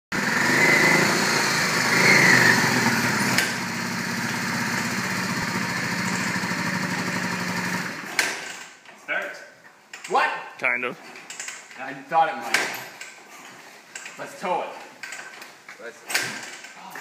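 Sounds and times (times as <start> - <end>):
small engine running: 0.1 - 8.1.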